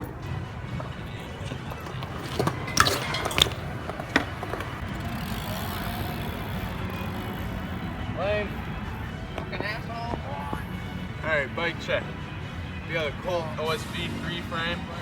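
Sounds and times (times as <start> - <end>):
metallic clinks and knocks: 0.7 - 4.8.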